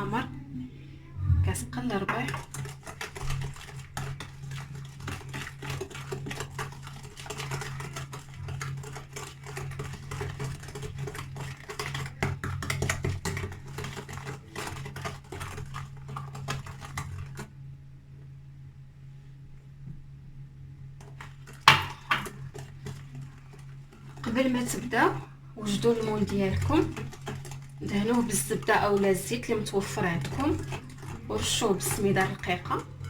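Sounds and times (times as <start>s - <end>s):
steady low hum: 0.0s - 2.8s, 17.5s - 33.0s
utensil stirring batter in bowl: 1.4s - 17.8s, 20.8s - 33.0s.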